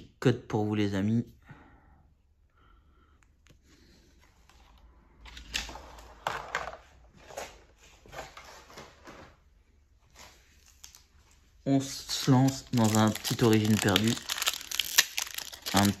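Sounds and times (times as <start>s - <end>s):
cards and packaging rustling: 10.1s - 16.0s.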